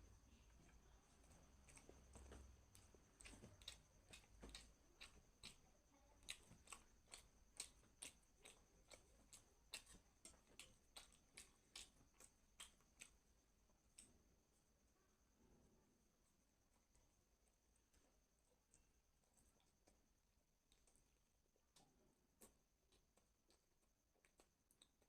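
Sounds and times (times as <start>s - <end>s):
mouth clicks chewing food: 0.4s - 14.2s, 20.7s - 25.0s.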